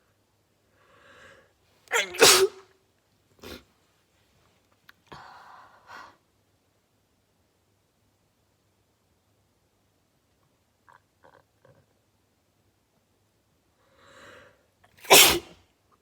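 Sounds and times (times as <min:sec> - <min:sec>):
soft breathy sounds: 0:00.6 - 0:01.9, 0:05.1 - 0:06.2
person sneezing: 0:01.9 - 0:02.7, 0:15.0 - 0:15.6.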